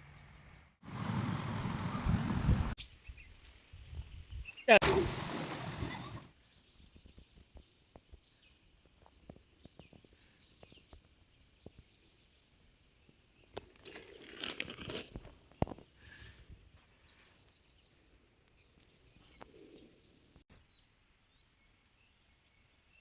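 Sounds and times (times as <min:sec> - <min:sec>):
rustling and crunching handling noise: 0:13.5 - 0:15.9.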